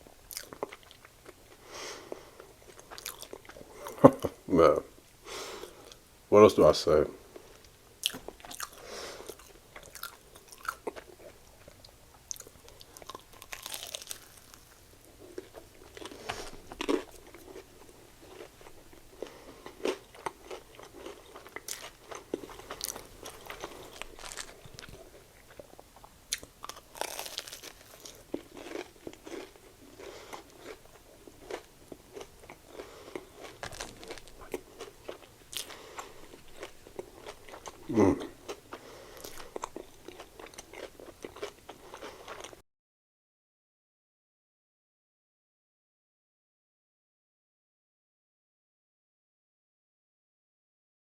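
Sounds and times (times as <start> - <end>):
person biting and chewing: 0.3 - 1.4, 2.1 - 4.3, 7.6 - 42.6.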